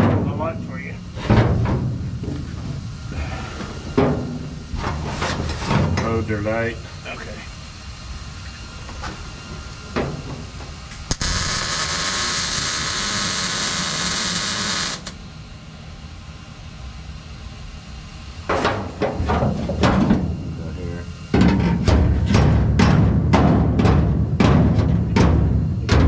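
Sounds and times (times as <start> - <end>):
welding arc hissing: 11.1 - 15.2.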